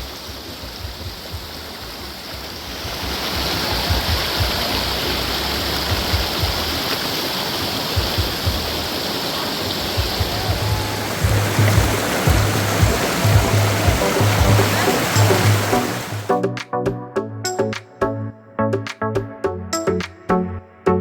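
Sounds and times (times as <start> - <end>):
stream rushing over rocks: 0.0 - 16.3.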